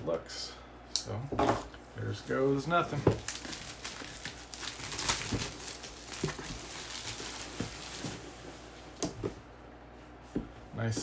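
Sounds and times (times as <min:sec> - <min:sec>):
packaging crinkling and rustling: 0:02.2 - 0:08.8.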